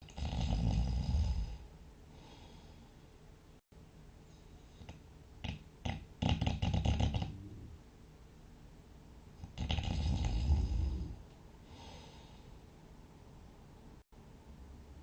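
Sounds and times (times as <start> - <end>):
person snoring: 0.0 - 1.7, 5.4 - 7.8, 9.4 - 12.4
short snorts: 4.8 - 7.5, 9.4 - 11.2.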